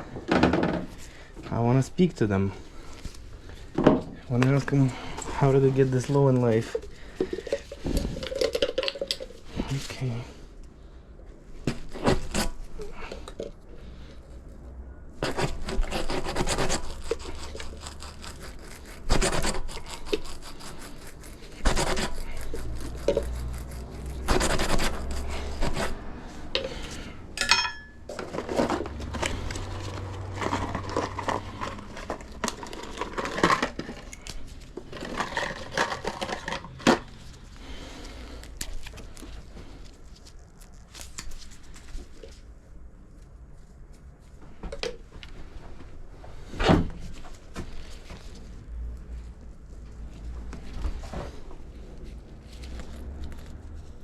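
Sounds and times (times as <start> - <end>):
scraping and rustling on a tire: 11.4 - 44.6, 45.3 - 54.0.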